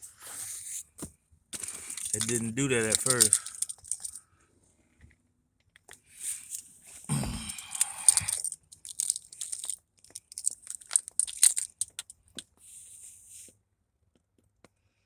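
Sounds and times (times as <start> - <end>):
rustling and crinkling handling: 1.6 - 4.2, 7.7 - 12.4.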